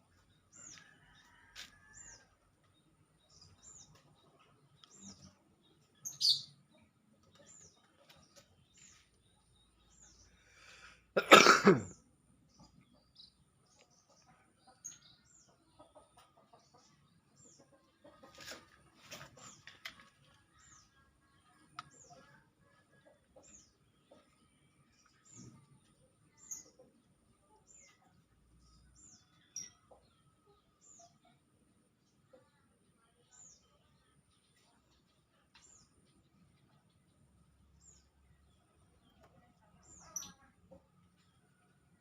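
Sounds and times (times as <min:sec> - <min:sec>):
small birds chirping: 0:00.0 - 0:11.1, 0:11.8 - 0:42.0
man coughing: 0:11.2 - 0:12.0.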